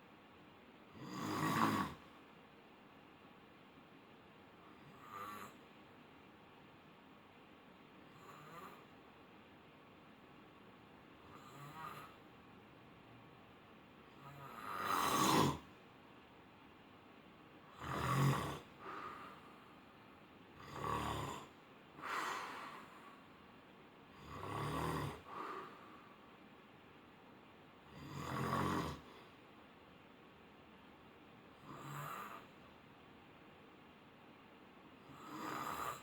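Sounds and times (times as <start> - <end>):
person snoring: 0.9 - 2.1, 11.3 - 12.2, 14.2 - 15.7, 17.7 - 19.4, 20.6 - 22.9, 24.2 - 25.9, 27.9 - 29.2, 31.6 - 32.5, 35.1 - 36.0.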